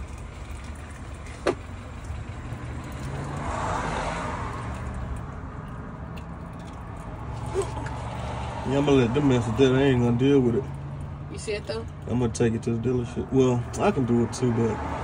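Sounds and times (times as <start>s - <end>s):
car driving past: 2.2s - 11.3s, 13.1s - 15.0s.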